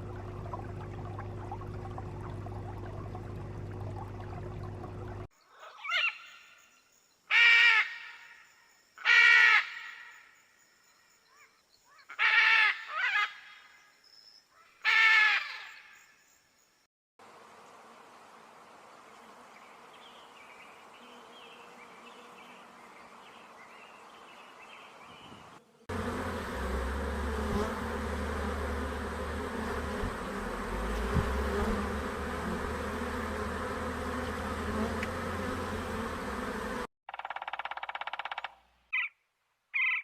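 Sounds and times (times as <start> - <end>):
insects buzzing drone: 15.9 - 38.4.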